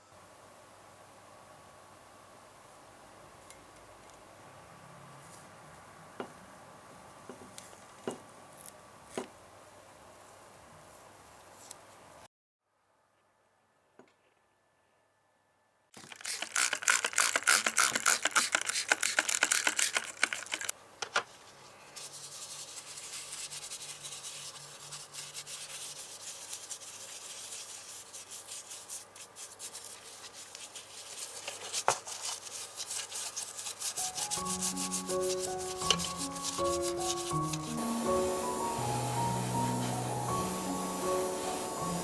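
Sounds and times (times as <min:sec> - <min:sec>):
hand sanding scraping: 0:22.0 - 0:42.0
music: 0:34.0 - 0:42.0.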